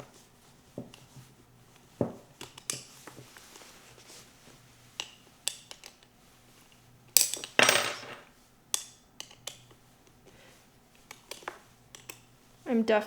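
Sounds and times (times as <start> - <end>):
small metal tools clinking: 7.2 - 8.3.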